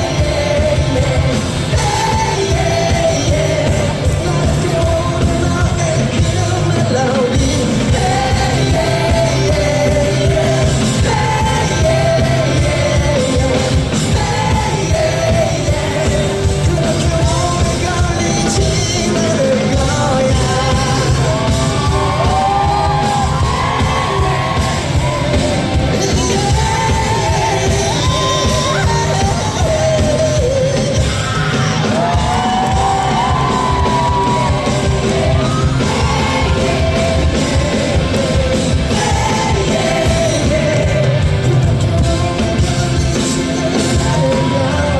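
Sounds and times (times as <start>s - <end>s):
live pop-rock band: 0.0s - 44.9s
man singing: 0.0s - 44.9s.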